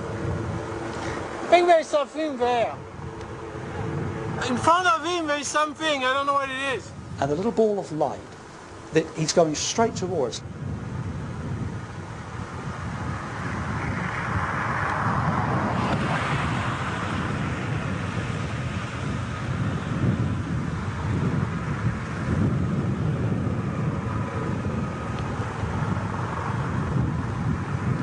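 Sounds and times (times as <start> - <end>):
distant helicopter hovering: 0.0 - 28.0
wind buffeting microphone: 0.0 - 28.0.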